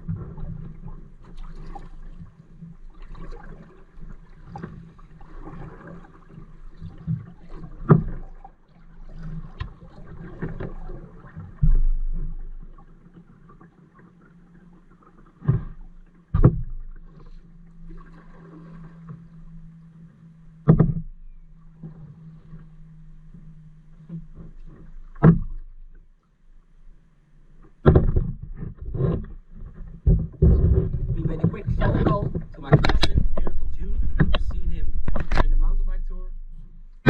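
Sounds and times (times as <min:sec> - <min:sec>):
paddle splashing and dripping: 0:00.0 - 0:28.7, 0:31.2 - 0:37.0
dull thump: 0:11.6 - 0:12.4, 0:15.5 - 0:16.9, 0:20.6 - 0:21.1, 0:25.2 - 0:25.6, 0:27.8 - 0:29.3.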